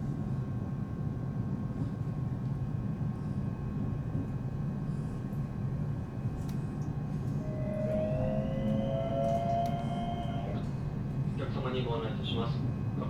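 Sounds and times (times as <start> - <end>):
electric train rumbling: 6.8 - 13.0
sustained two-note tone: 7.3 - 10.7.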